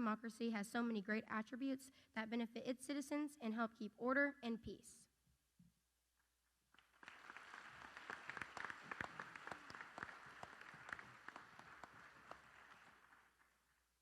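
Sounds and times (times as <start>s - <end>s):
audience applauding: 6.8s - 13.8s.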